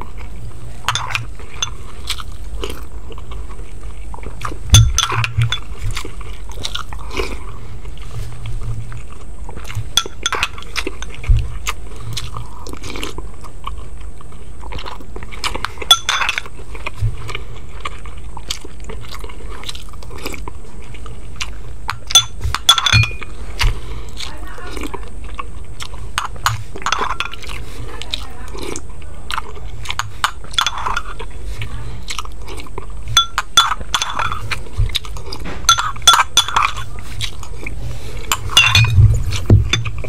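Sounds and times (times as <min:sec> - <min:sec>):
chewing and crunching food: 0:00.0 - 0:40.0
utensils clinking against dish: 0:00.9 - 0:01.8, 0:04.7 - 0:05.7, 0:09.9 - 0:11.2, 0:15.8 - 0:16.5, 0:22.0 - 0:23.3, 0:26.2 - 0:27.5, 0:30.0 - 0:31.2, 0:33.1 - 0:34.6, 0:35.5 - 0:36.8, 0:38.3 - 0:40.0
low hum: 0:20.0 - 0:24.2, 0:28.9 - 0:40.0.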